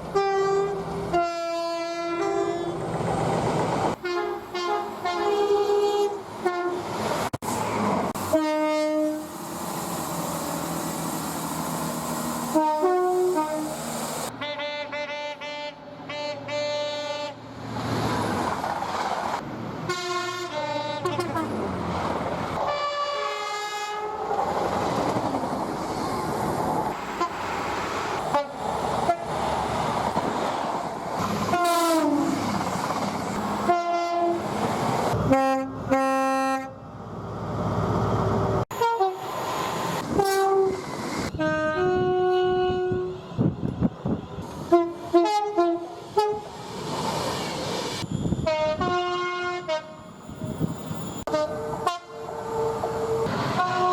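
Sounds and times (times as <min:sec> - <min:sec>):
rush of passing trains: 0:00.0 - 0:53.9
two-tone train horn blasts: 0:00.1 - 0:02.8, 0:04.0 - 0:06.8, 0:08.2 - 0:09.3, 0:12.5 - 0:13.8, 0:14.4 - 0:17.4, 0:19.9 - 0:21.6, 0:22.6 - 0:24.2, 0:28.3 - 0:29.3, 0:31.5 - 0:32.4, 0:33.6 - 0:34.4, 0:35.2 - 0:36.8, 0:38.7 - 0:39.3, 0:40.1 - 0:43.3, 0:44.7 - 0:46.5, 0:48.3 - 0:50.1, 0:51.3 - 0:53.9.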